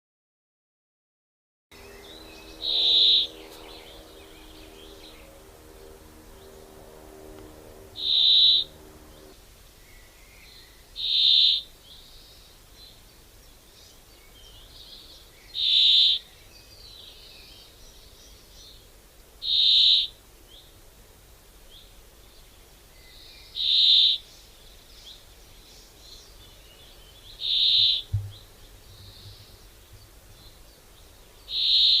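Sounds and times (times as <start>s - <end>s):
faint bird chirps: 1.8s - 5.4s, 21.7s - 32.0s
loud high-pitched bird call: 1.8s - 9.3s, 11.0s - 11.7s, 15.5s - 16.3s, 19.4s - 20.2s, 23.6s - 24.2s, 27.4s - 28.1s, 31.5s - 32.0s.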